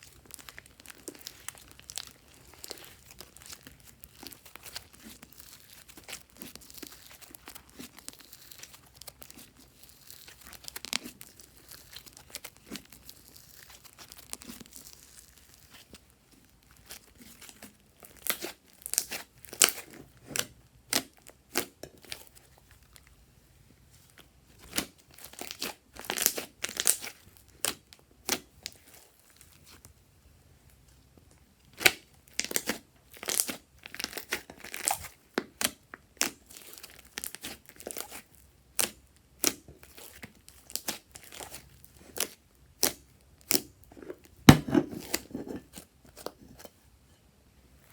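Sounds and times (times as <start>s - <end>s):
slime squishing with wet pops: 0.0s - 23.1s, 24.1s - 30.0s, 30.7s - 46.4s.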